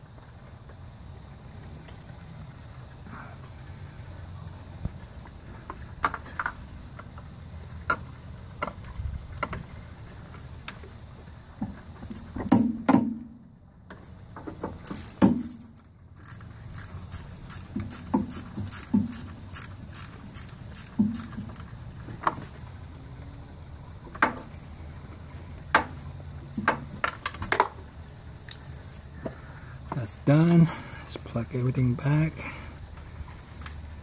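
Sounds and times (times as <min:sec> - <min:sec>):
low steady hum: 0:00.0 - 0:34.0.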